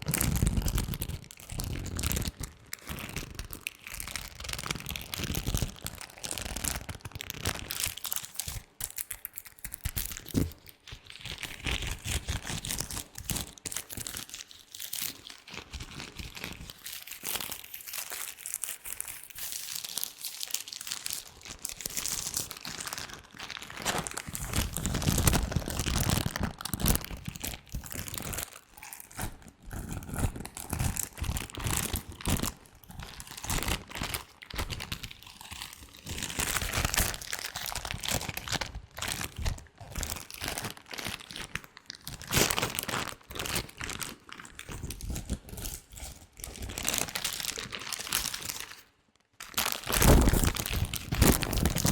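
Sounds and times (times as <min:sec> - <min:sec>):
latex gloves crinkling: 0:15.0 - 0:51.9.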